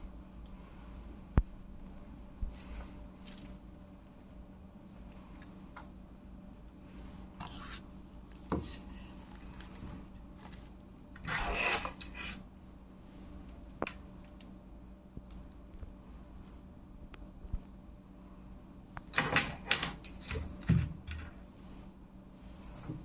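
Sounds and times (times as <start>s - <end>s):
paper rustle: 8.7s - 12.4s.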